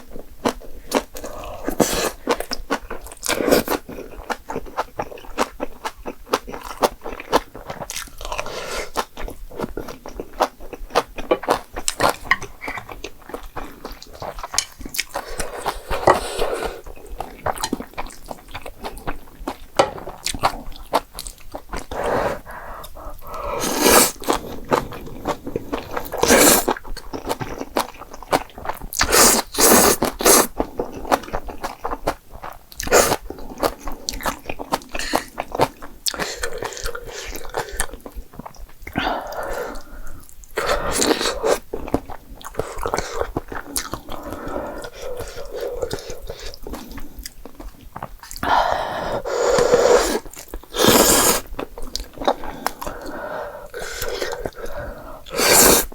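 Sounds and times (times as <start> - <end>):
person chewing and crunching food: 0.0 - 55.9.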